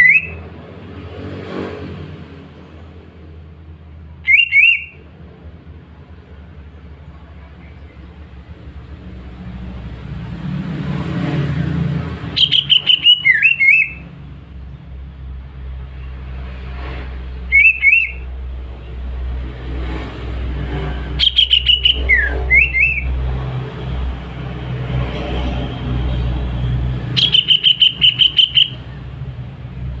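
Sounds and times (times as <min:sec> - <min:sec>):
bird singing whistled notes: 0:00.0 - 0:00.4, 0:04.2 - 0:05.0, 0:12.4 - 0:14.0, 0:17.5 - 0:18.2, 0:21.2 - 0:23.1, 0:27.1 - 0:29.0.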